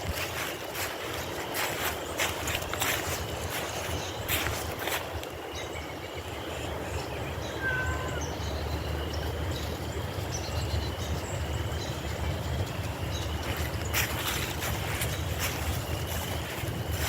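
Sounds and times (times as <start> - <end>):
wind rumble on microphone: 0.0 - 17.0
thin high bird calls: 0.1 - 8.7.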